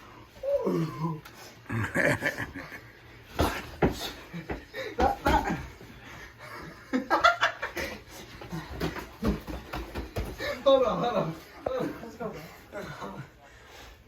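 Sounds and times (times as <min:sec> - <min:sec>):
people laughing: 0:01.7 - 0:03.2, 0:04.2 - 0:08.7.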